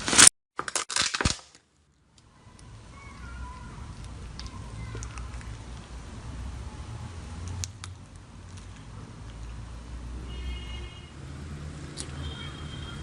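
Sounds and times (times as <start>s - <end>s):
slime squishing: 2.5s - 6.1s
small clicks and pops: 3.9s - 5.9s.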